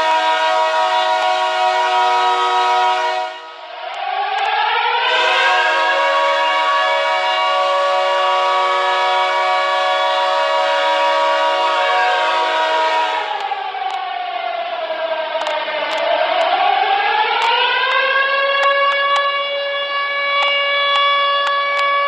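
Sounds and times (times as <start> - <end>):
loud air horn chord: 0.0 - 3.9, 5.0 - 13.5
siren winding down: 0.0 - 22.0.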